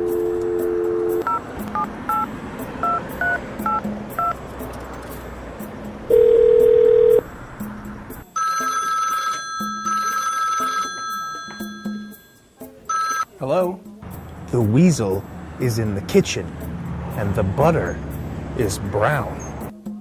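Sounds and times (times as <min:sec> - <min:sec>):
steady dial tone: 0:00.0 - 0:02.2, 0:06.1 - 0:07.2
telephone ringing: 0:06.1 - 0:07.2, 0:08.4 - 0:12.3, 0:12.9 - 0:13.3.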